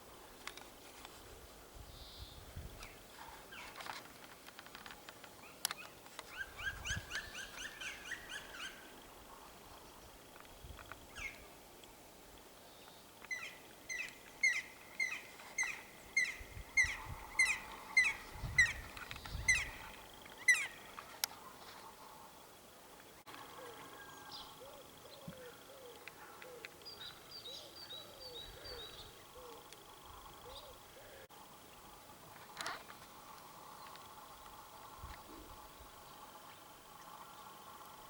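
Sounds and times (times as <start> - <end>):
woodpecker calling: 5.4 - 9.0, 11.1 - 11.5, 13.2 - 21.0, 23.3 - 31.3.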